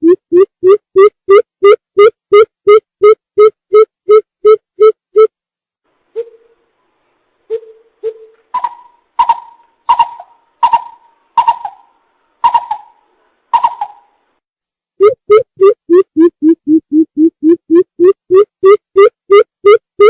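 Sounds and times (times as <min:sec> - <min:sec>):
low bird hoots: 0:06.2 - 0:06.6
bird calling with rising hoots: 0:07.5 - 0:14.1.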